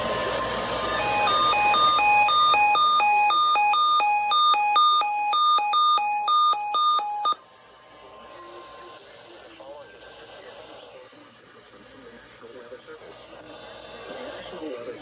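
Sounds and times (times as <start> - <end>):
electronic alert beeps: 0.7 - 7.4.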